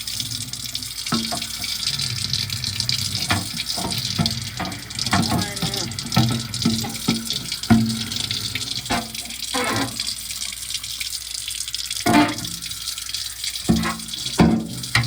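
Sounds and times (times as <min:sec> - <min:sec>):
tap water running into sink: 0:00.0 - 0:15.0
items clattering in water: 0:00.8 - 0:02.0, 0:02.6 - 0:10.2, 0:12.0 - 0:12.6, 0:13.6 - 0:15.0.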